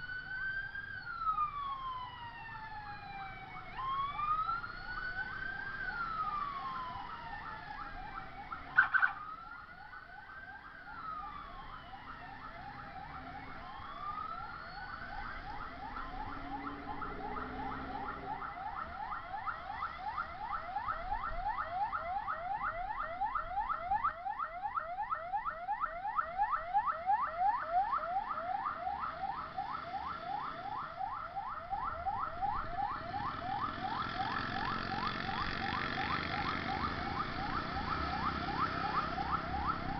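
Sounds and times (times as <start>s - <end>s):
ambulance siren wailing and yelping: 0.0s - 39.9s.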